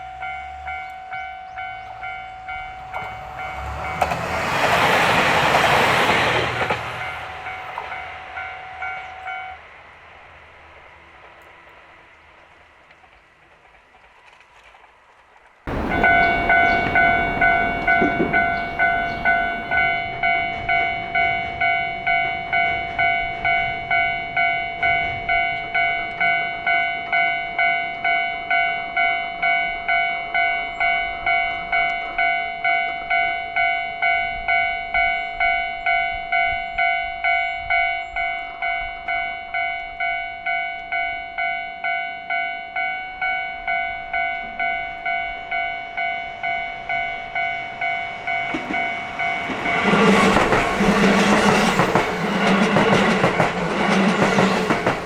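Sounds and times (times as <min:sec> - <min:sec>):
railroad crossing bell ringing: 0:00.0 - 0:04.2, 0:05.1 - 0:09.7, 0:15.7 - 0:55.0
train wheels clacking over rails: 0:02.9 - 0:08.1, 0:15.7 - 0:20.0, 0:47.9 - 0:55.0.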